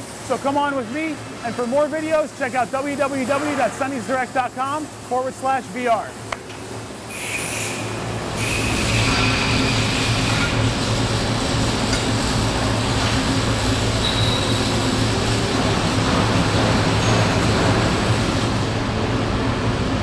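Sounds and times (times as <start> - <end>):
industrial machinery rushing noise: 0.0 - 6.3.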